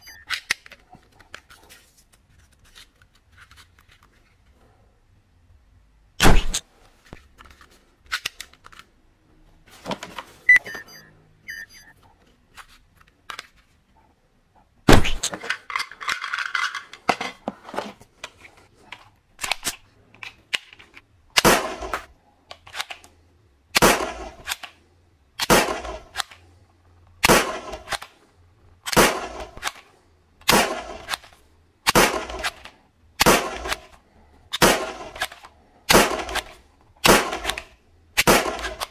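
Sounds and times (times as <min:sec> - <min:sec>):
short electronic beeps: 0:00.0 - 0:00.3, 0:10.5 - 0:12.0
toy gun shots: 0:06.2 - 0:06.6, 0:14.9 - 0:15.4, 0:34.5 - 0:38.9.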